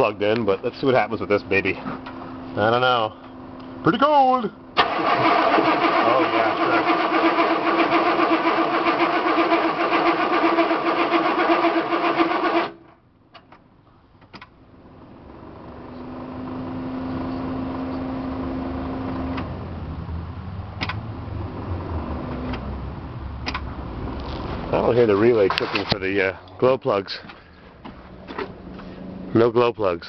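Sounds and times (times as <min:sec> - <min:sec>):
diesel engine cranking: 0:04.0 - 0:13.6, 0:20.7 - 0:29.7
sharp clicks: 0:20.8 - 0:21.0.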